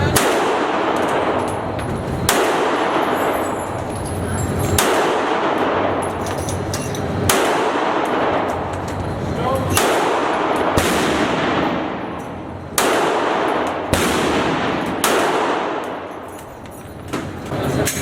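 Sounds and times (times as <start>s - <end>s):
loud gunshots with echo: 0.0s - 3.5s, 4.8s - 6.1s, 7.2s - 8.7s, 9.6s - 16.2s.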